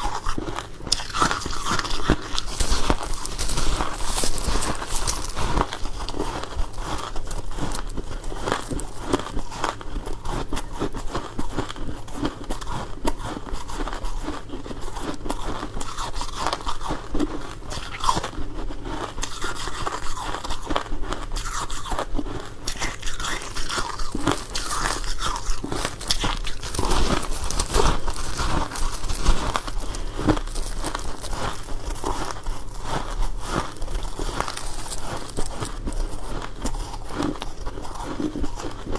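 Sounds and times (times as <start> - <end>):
crunching and chewing frost: 0.0 - 38.9.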